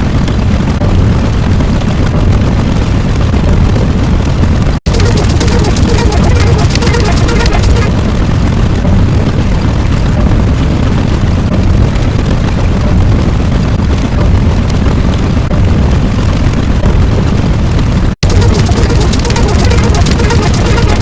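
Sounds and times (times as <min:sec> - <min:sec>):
loud low rumble: 0:04.8 - 0:21.0.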